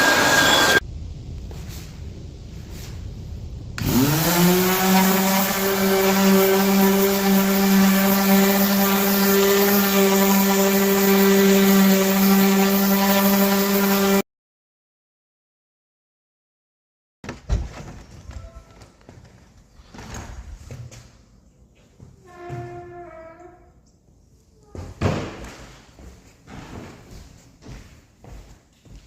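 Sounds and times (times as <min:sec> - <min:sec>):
floor sander motor spinning up: 0:00.0 - 0:00.8, 0:03.8 - 0:14.2.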